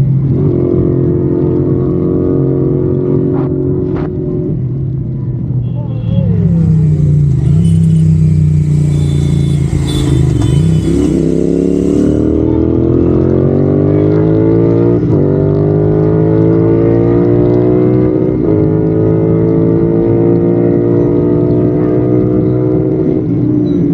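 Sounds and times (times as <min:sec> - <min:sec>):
motorcycle engine accelerating: 0:06.3 - 0:23.4.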